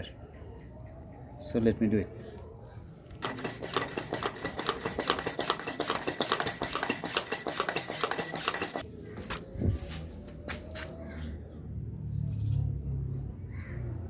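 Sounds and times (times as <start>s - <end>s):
foot pump clicking and rattling: 3.2s - 8.9s.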